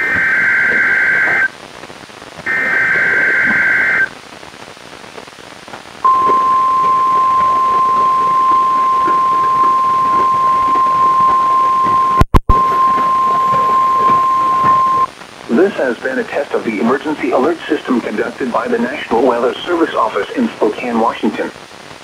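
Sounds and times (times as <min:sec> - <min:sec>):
screechy data bursts: 0:00.0 - 0:01.5, 0:02.5 - 0:04.1, 0:06.1 - 0:15.1
static hiss: 0:00.0 - 0:22.0.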